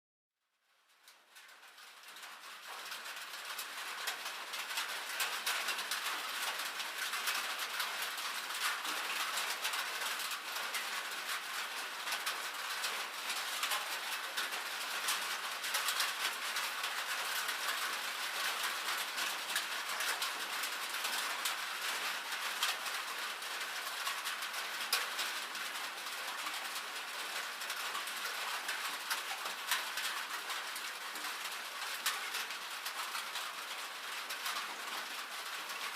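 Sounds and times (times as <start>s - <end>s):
rain on a tin roof: 0.4s - 35.9s.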